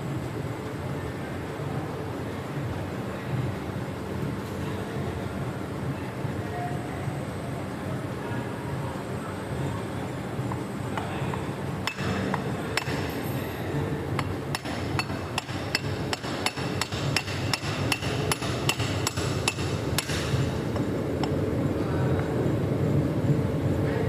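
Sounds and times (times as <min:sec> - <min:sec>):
low background rumble: 0:00.0 - 0:24.0
hammer striking metal: 0:11.8 - 0:13.2, 0:14.2 - 0:21.3.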